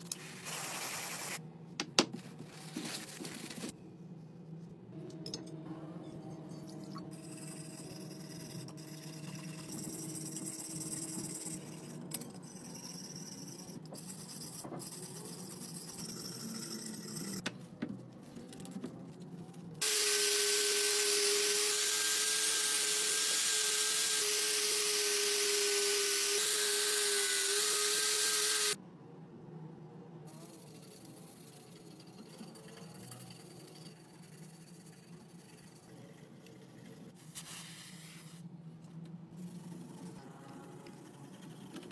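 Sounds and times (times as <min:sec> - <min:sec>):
scraping and handling sounds: 0:02.0 - 0:03.8
power tool whining: 0:19.8 - 0:28.8.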